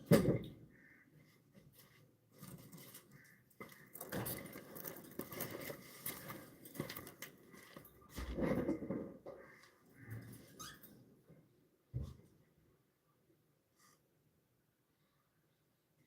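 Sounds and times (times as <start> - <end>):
birds tapping and scratching in cage: 1.8 - 11.0.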